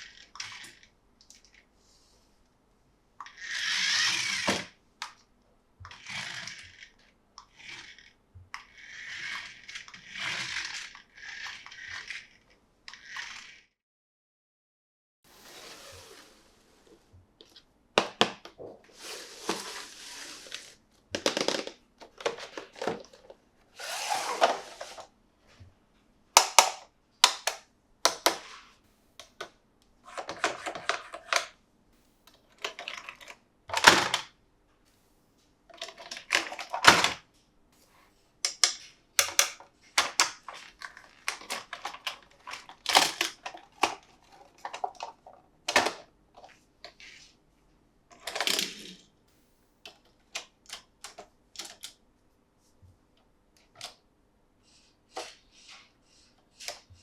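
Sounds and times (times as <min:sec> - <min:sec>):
plastic parts clicking: 0:21.1 - 0:25.0, 0:26.4 - 0:28.5, 0:29.2 - 0:31.6, 0:32.3 - 0:34.3, 0:35.7 - 0:37.2, 0:38.4 - 0:47.0, 0:48.1 - 0:49.1, 0:49.8 - 0:52.0.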